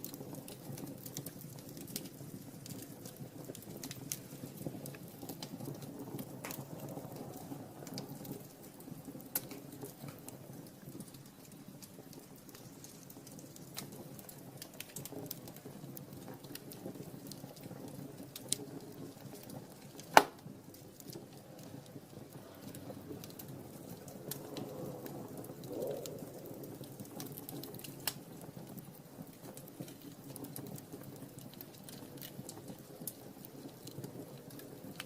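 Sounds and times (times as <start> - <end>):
fire crackling: 0.0 - 35.0
fire flames rustling: 0.0 - 35.0
loud pop of fire: 19.9 - 20.6.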